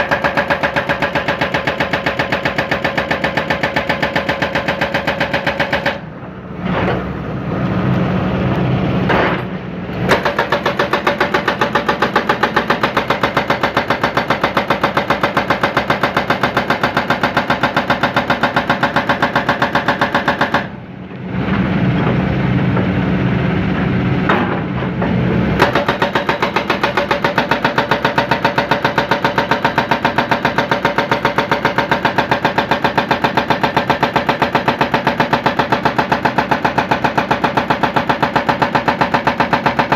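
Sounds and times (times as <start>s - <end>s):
excavator diesel engine running: 20.7s - 37.9s.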